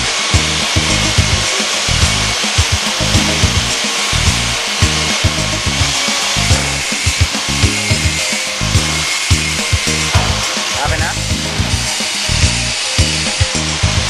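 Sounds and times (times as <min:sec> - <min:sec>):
background music with steady beat: 0:00.0 - 0:14.0
continuous hiss: 0:00.0 - 0:14.0.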